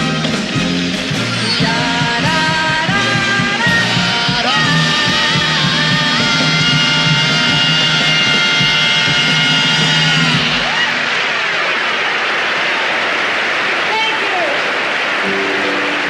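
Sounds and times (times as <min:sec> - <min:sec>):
band playing instrumental: 0:00.0 - 0:11.2, 0:15.2 - 0:16.0.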